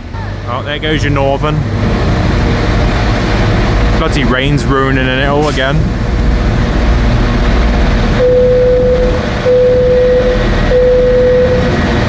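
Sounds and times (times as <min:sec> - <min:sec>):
train rumble: 0:00.0 - 0:12.0
long electronic beeps: 0:08.2 - 0:11.8.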